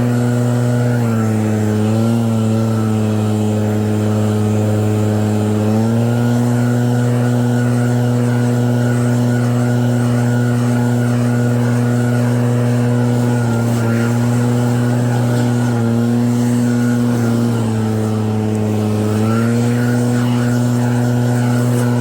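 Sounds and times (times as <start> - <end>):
snowblower engine running: 0.0 - 22.0.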